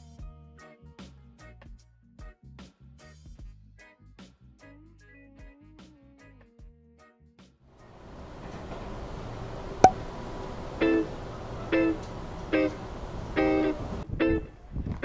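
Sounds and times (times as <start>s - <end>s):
room noise hiss: 7.8s - 14.1s.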